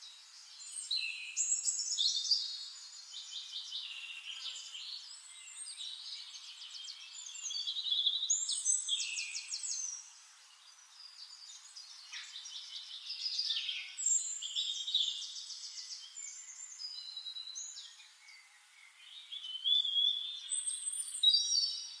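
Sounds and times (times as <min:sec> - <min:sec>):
songbirds singing and calling: 0:00.0 - 0:22.0.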